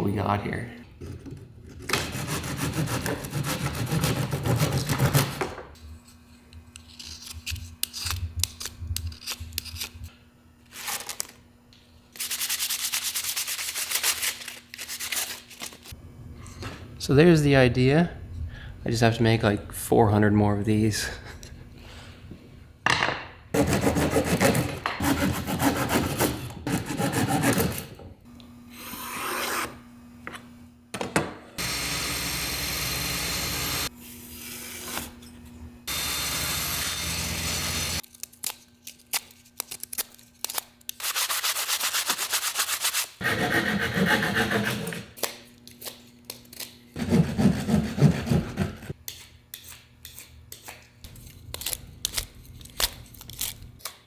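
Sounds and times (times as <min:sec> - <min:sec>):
hand sawing wood: 0:01.8 - 0:05.6, 0:23.6 - 0:28.0, 0:41.0 - 0:45.1, 0:47.0 - 0:49.0.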